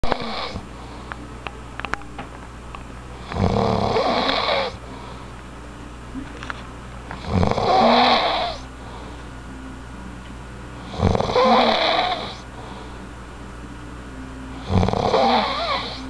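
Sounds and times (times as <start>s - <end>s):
person snoring: 0.0s - 0.6s, 3.2s - 4.8s, 7.2s - 8.6s, 10.8s - 12.9s, 14.6s - 16.0s
quiet breathing: 4.7s - 5.4s, 8.4s - 9.4s, 12.0s - 13.2s.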